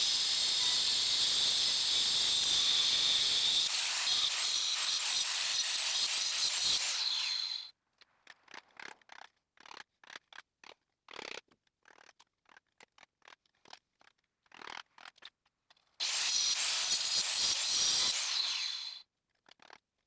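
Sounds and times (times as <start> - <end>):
power saw cutting metal: 0.0 - 7.7, 16.0 - 19.0.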